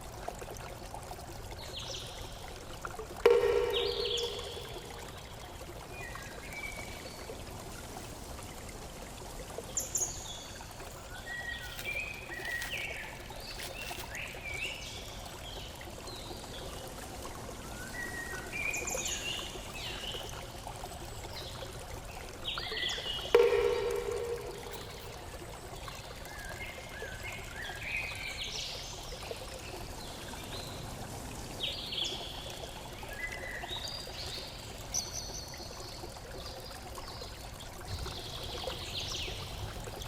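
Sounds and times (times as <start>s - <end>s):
flowing water rushing: 0.0s - 40.0s
loud sound with low tone: 3.3s - 5.2s, 23.4s - 25.2s
birds chirping: 3.3s - 5.3s.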